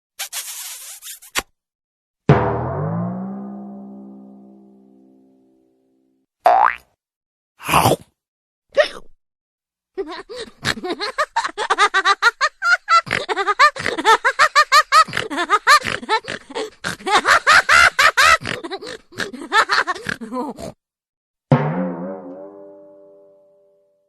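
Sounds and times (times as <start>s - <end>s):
cartoon cackling laugh: 10.0s - 20.6s.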